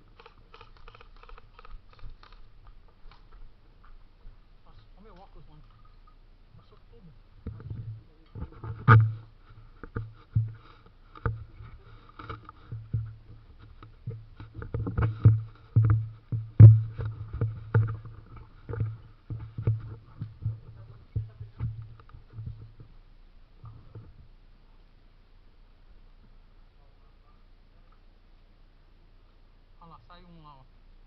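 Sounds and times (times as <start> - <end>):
dull knocks and thumps: 7.4 - 23.0.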